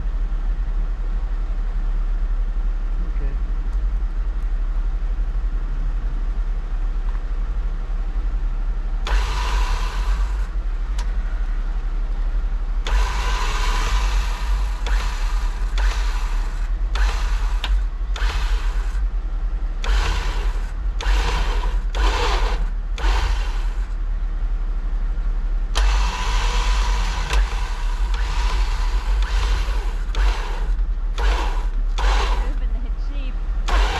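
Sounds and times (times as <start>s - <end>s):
vehicle engine rumbling: 0.0s - 33.9s
loud bursts of noise: 9.0s - 10.5s, 12.8s - 19.1s, 19.7s - 24.0s, 25.7s - 33.9s.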